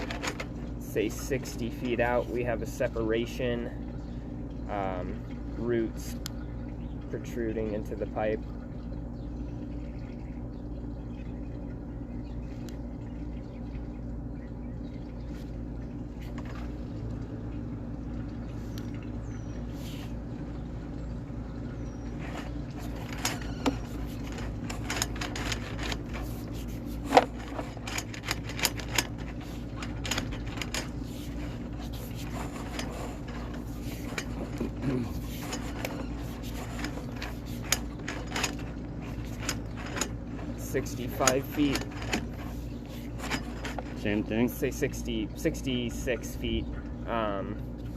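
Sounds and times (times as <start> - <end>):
cable reel clicks and rattles: 0.0 - 3.0, 22.1 - 45.1
steady low hum: 0.0 - 47.9.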